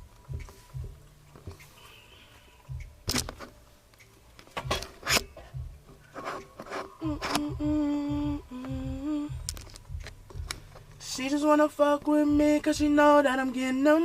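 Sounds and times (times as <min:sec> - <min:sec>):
hip-hop beat: 0:00.0 - 0:14.0
sharp clicks and knocks: 0:02.7 - 0:07.5, 0:09.4 - 0:10.9.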